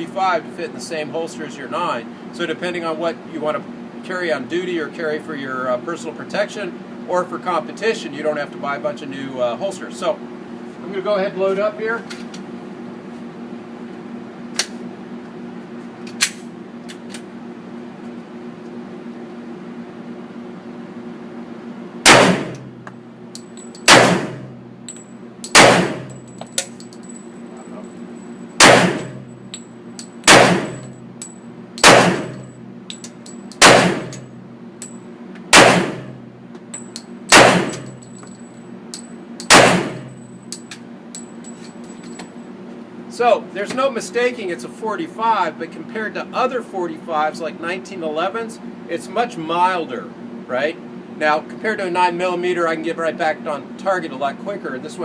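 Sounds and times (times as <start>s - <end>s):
steady background hum: 0.0s - 55.0s
pistol shots ringing indoors: 22.0s - 22.8s, 23.8s - 24.6s, 25.5s - 26.7s, 28.6s - 29.3s, 30.2s - 31.0s, 31.8s - 32.6s, 33.6s - 34.3s, 35.5s - 36.2s, 37.3s - 38.0s, 39.4s - 40.2s
pistol loading clicks: 23.3s - 23.9s, 24.9s - 27.1s, 32.9s - 34.2s
light metallic clinks: 23.4s - 23.9s, 24.9s - 28.5s, 37.8s - 39.5s, 40.2s - 42.4s.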